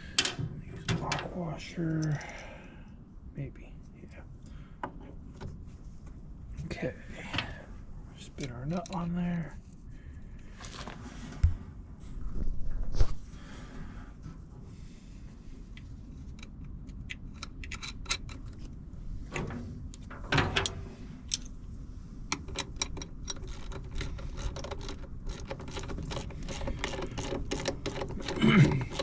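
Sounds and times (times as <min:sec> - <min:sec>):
wrench clicking on bolt: 0:00.0 - 0:00.4.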